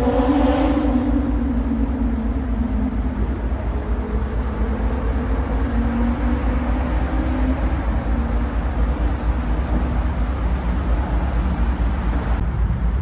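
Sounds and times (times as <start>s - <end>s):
ship engine rumble and drone: 0.0s - 12.6s.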